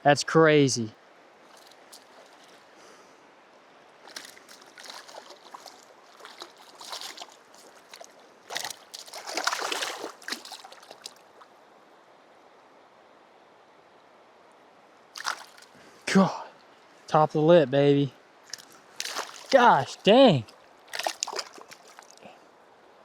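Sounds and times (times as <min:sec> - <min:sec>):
water splashing and dripping: 0:01.5 - 0:02.6, 0:04.0 - 0:11.5, 0:15.2 - 0:15.8, 0:18.4 - 0:22.4.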